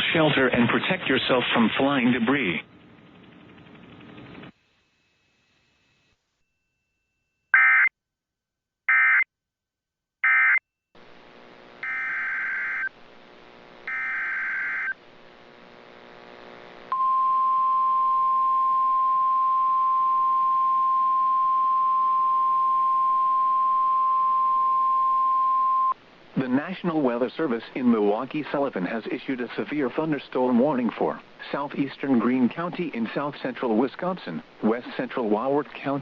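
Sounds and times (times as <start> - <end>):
weather radio alarm tone: 7.6 - 7.9, 8.9 - 9.2, 10.2 - 10.6, 11.8 - 12.9, 13.9 - 15.0
data bursts buzzing: 11.4 - 12.9, 13.5 - 15.0
steady hiss: 26.0 - 36.0.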